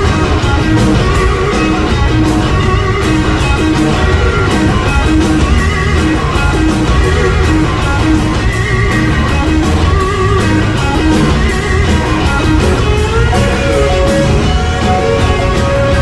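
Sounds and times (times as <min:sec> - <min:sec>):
blues-rock band playing: 0:00.0 - 0:16.0
electric guitar line: 0:00.0 - 0:16.0.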